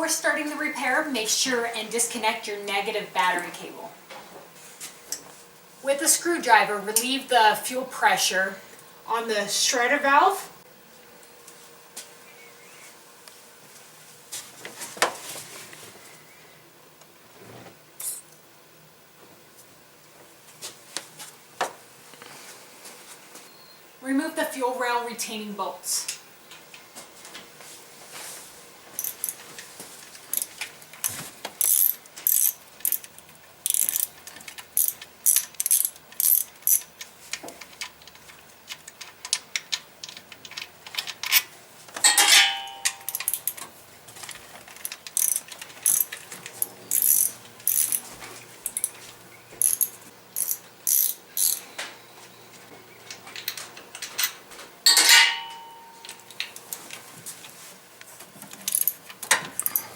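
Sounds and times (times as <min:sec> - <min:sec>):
hand ratchet clicking: 0:29.0 - 0:29.4, 0:30.3 - 0:37.0, 0:42.6 - 0:43.6, 0:44.8 - 0:48.9, 0:49.6 - 0:51.6, 0:58.5 - 0:59.9
metal clinks ringing: 0:42.0 - 0:43.5, 0:54.9 - 0:56.3.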